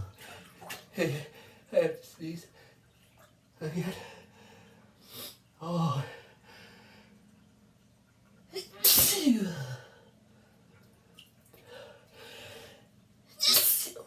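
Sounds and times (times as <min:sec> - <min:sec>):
person sneezing: 0:08.6 - 0:09.7, 0:13.4 - 0:14.0.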